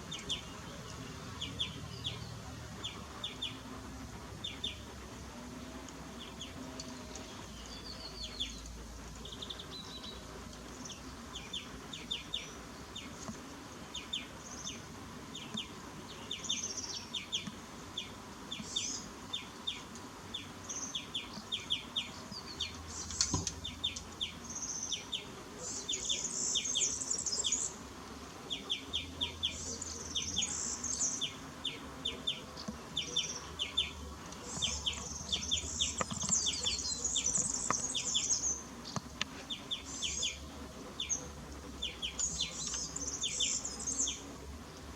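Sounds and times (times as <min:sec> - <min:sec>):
small birds chirping: 0:00.0 - 0:44.9
high twittering bird calls: 0:28.5 - 0:44.4.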